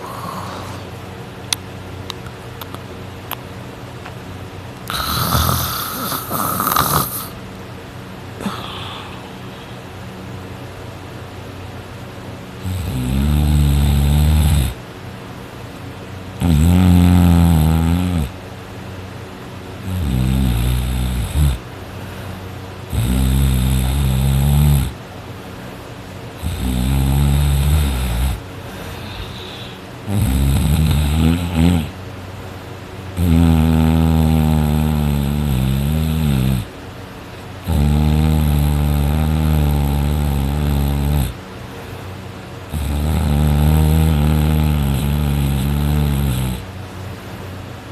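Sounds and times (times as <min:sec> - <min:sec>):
person snoring: 0:00.0 - 0:00.9, 0:04.9 - 0:07.4, 0:08.4 - 0:09.7, 0:12.6 - 0:14.8, 0:16.4 - 0:18.4, 0:19.8 - 0:21.6, 0:22.9 - 0:25.0, 0:26.4 - 0:32.0, 0:33.2 - 0:36.7, 0:37.6 - 0:41.4, 0:42.7 - 0:46.7.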